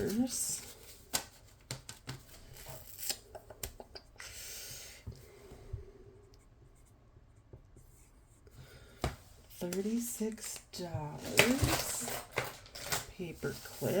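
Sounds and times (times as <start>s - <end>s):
banknotes rustling and tapping: 0.0s - 3.8s, 8.6s - 14.0s.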